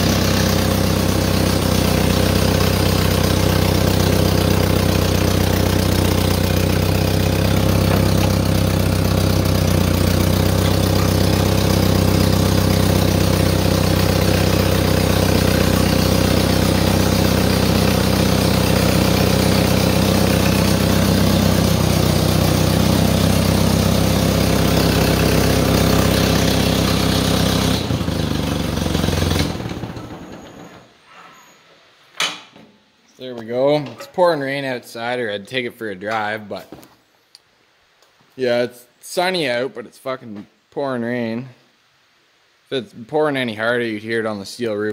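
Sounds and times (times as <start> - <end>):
tractor engine idling: 0.0 - 30.9.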